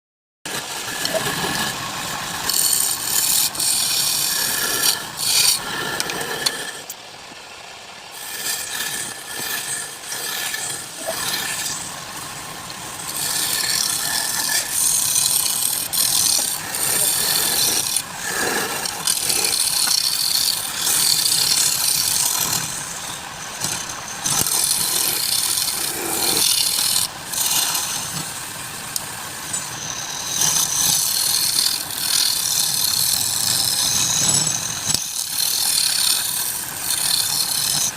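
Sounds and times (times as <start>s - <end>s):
lathe tool scraping wood: 0.5s - 7.0s, 8.1s - 37.9s.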